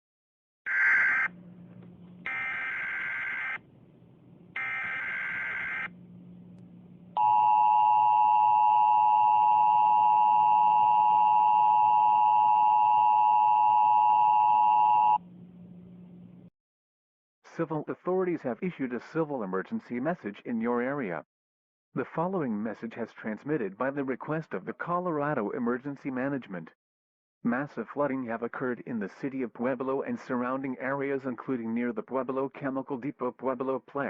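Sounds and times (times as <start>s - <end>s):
faint low hum: 1.3s - 2.8s, 3.5s - 16.5s.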